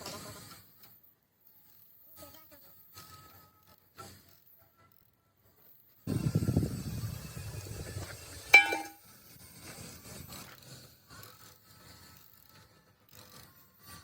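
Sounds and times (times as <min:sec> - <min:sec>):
metallic clink: 0:08.5 - 0:09.0.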